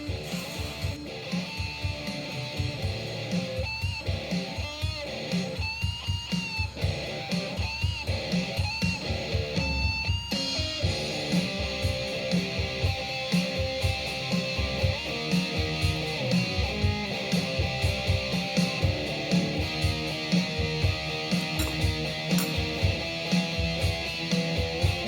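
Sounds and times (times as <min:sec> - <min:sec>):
guitar-led instrumental music: 0:00.0 - 0:25.0.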